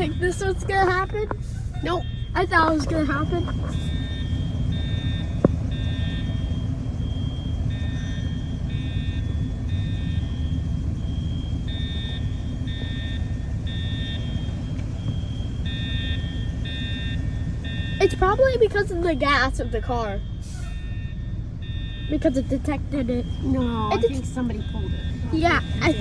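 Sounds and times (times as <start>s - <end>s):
fire alarm horns: 0.0s - 26.0s
idling vehicle rumble: 0.0s - 26.0s.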